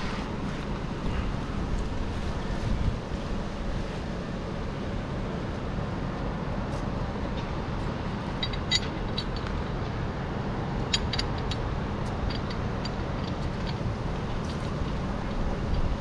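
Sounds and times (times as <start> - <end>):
engine running steadily: 0.0 - 16.0
sharp metallic clinks: 8.4 - 9.5.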